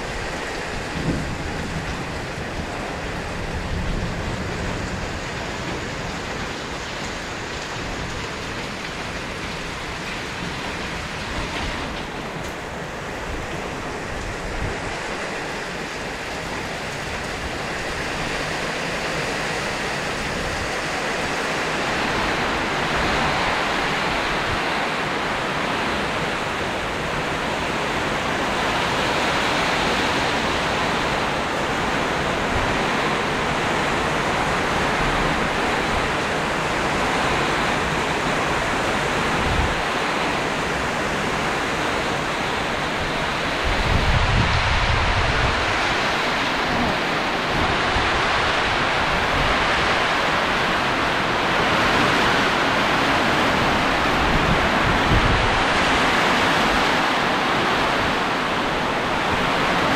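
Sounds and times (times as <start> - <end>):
heavy rain pouring: 0.0 - 59.9
wind gusting: 0.0 - 59.9.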